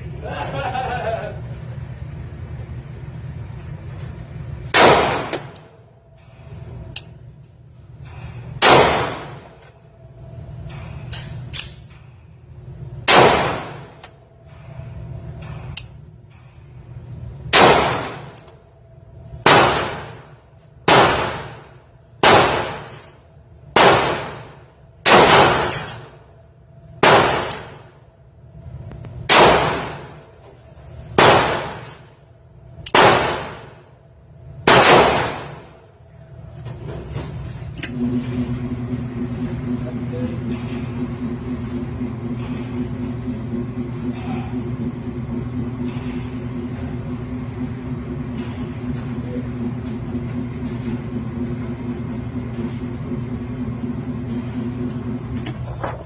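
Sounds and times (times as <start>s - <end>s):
pistol shots: 4.7s - 5.6s, 8.6s - 9.5s, 13.1s - 14.0s, 17.5s - 18.4s, 19.4s - 20.3s, 20.9s - 23.1s, 23.8s - 26.1s, 27.0s - 27.9s, 29.3s - 30.2s, 31.2s - 32.0s, 32.9s - 33.8s, 34.6s - 35.7s.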